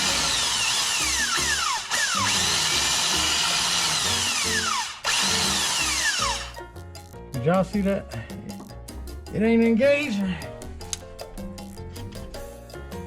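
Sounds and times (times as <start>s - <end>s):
starter motor spinning: 0.0s - 6.6s
music with steady bass line: 6.2s - 13.0s.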